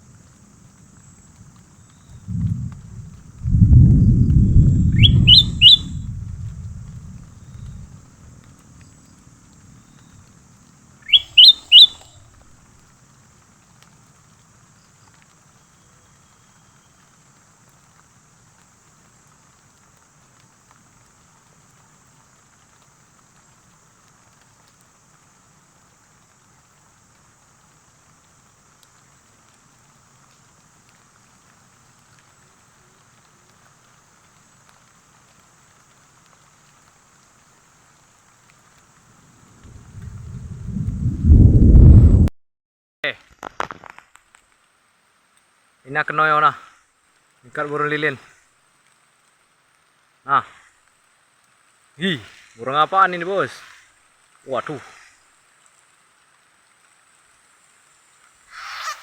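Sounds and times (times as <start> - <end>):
low rumble: 2.1 - 8.3, 39.4 - 42.3
bird calling: 4.4 - 6.1, 11.0 - 12.3, 58.5 - 59.0.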